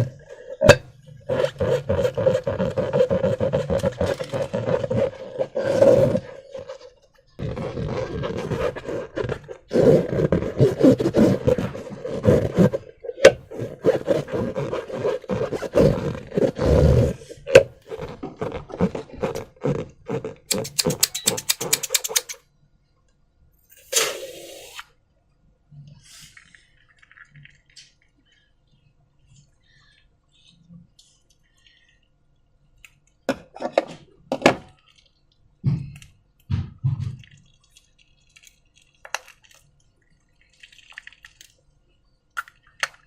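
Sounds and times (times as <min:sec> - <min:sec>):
rubbing and scraping balloons and slime: 0:00.0 - 0:22.4
sharp clicks: 0:20.5 - 0:22.4.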